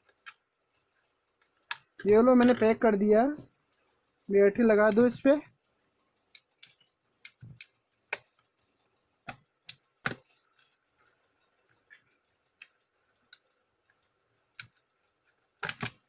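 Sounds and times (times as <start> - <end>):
laptop battery clicking into place: 15.6 - 16.0.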